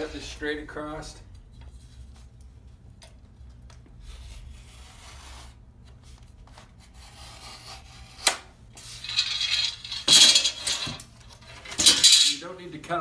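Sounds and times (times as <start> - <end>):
knife scraping drywall: 6.8 - 9.6.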